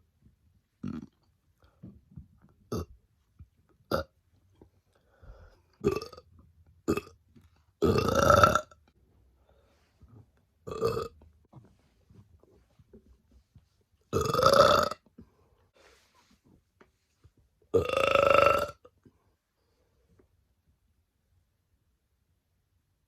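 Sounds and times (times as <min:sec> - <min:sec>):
woman burping: 0:07.8 - 0:08.7, 0:14.2 - 0:15.0, 0:17.8 - 0:18.9.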